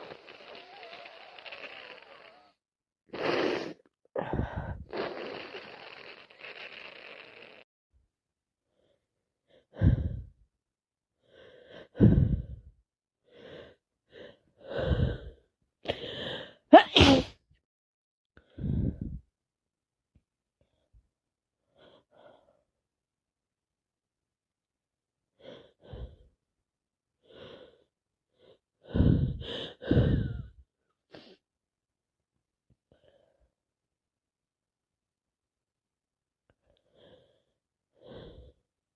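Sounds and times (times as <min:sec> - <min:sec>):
woman gasping and sighing: 0:04.2 - 0:04.9, 0:18.5 - 0:19.2
woman sneezing: 0:16.8 - 0:17.4.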